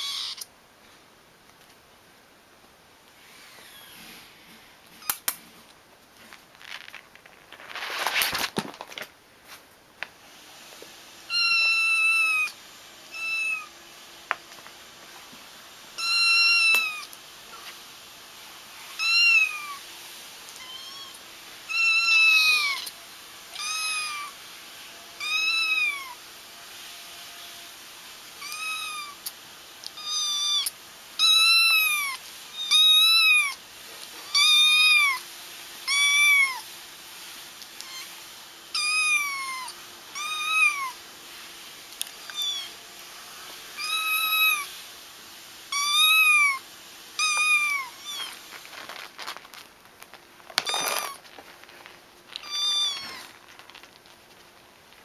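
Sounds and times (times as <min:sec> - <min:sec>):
kitten meowing: 0:00.0 - 0:00.5, 0:11.3 - 0:13.7, 0:16.0 - 0:17.1, 0:18.9 - 0:19.8, 0:20.6 - 0:24.4, 0:25.2 - 0:26.2, 0:28.4 - 0:29.3, 0:30.0 - 0:33.6, 0:34.3 - 0:35.2, 0:35.8 - 0:36.6, 0:37.8 - 0:41.0, 0:42.2 - 0:42.8, 0:43.8 - 0:44.7, 0:45.7 - 0:46.6, 0:47.2 - 0:48.4, 0:52.4 - 0:53.3.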